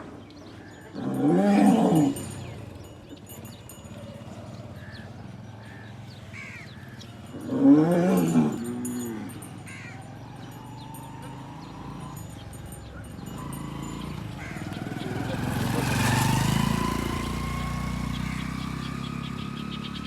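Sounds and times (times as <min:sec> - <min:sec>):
small birds chirping: 0:00.0 - 0:20.0
cow mooing: 0:00.9 - 0:02.6, 0:07.2 - 0:10.0.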